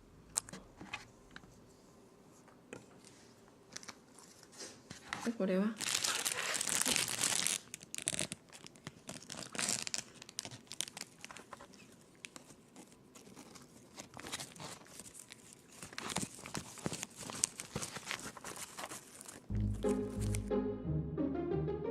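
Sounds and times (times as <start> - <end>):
packaging crinkling and rustling: 3.7 - 19.5.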